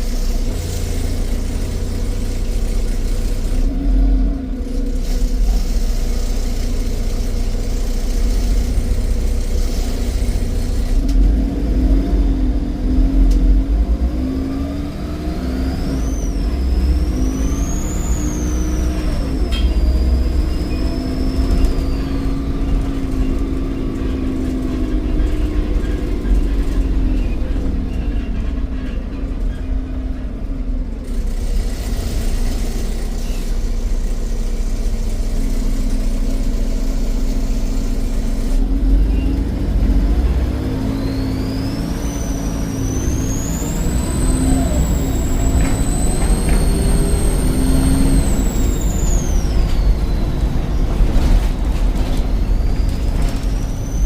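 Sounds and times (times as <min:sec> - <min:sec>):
diesel bus engine running: 0:00.0 - 0:54.0
turbocharger whistle: 0:14.5 - 0:26.0, 0:40.4 - 0:54.0.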